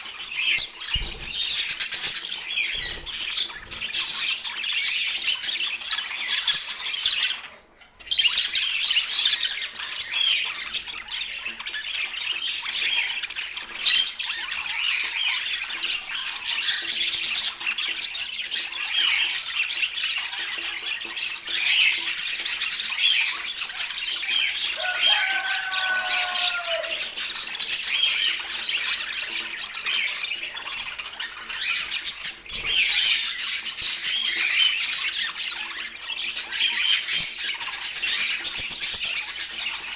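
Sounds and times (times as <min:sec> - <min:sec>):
budgerigars chattering: 0:00.0 - 0:39.9
low sliding bird call: 0:24.8 - 0:27.1.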